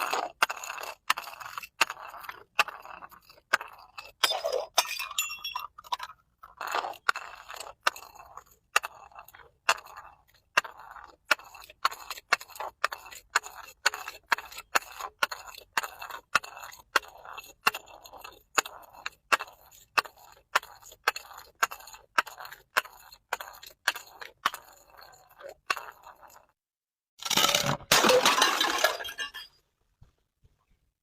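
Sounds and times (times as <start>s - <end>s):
glass shattering: 4.2s - 5.7s, 27.2s - 29.6s.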